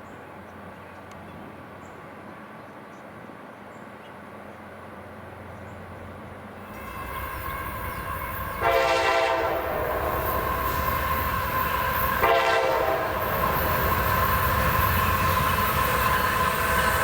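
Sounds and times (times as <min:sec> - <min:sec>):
train rumble: 0:00.1 - 0:17.0
steady high tone: 0:06.6 - 0:08.8
locomotive air horn blasts: 0:06.7 - 0:17.0.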